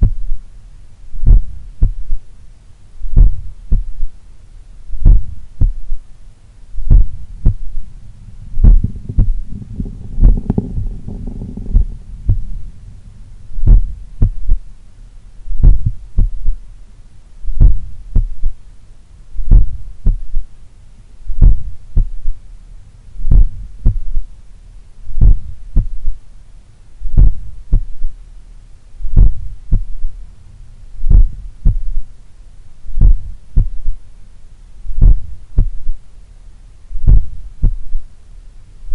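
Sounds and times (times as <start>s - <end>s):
heartbeat through stethoscope: 0.0s - 0.4s, 1.2s - 2.2s, 3.1s - 4.2s, 5.0s - 6.0s, 6.8s - 12.8s, 13.5s - 14.7s, 15.5s - 16.6s, 17.5s - 18.6s, 19.4s - 20.5s, 21.3s - 22.4s, 23.2s - 24.3s, 25.1s - 26.2s, 27.0s - 28.2s, 29.0s - 30.2s, 31.0s - 32.1s, 32.9s - 34.0s, 34.9s - 36.0s, 37.0s - 38.0s.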